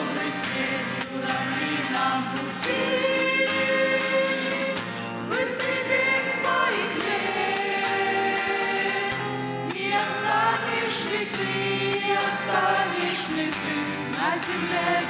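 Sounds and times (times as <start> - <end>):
choir singing: 0.0 - 15.0.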